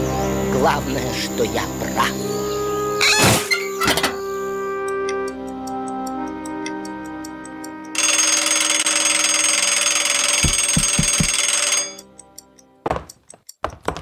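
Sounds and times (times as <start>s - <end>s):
loud bell ringing: 8.0s - 12.0s.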